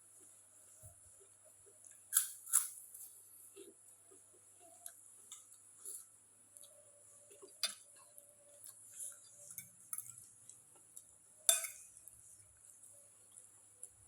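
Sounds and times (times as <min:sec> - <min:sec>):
cutlery clinking on a dish: 0:11.5 - 0:12.0.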